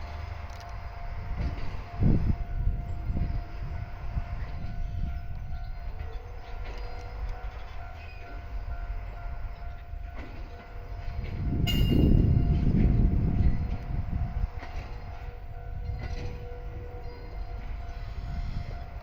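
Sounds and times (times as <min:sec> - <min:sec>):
train rumbling on track: 0:00.0 - 0:19.0.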